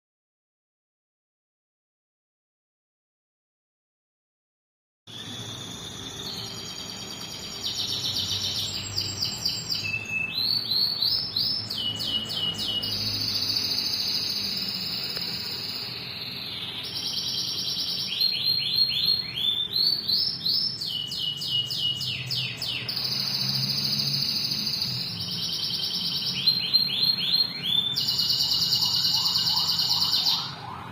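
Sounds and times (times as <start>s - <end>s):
songbird singing: 5.1s - 30.9s.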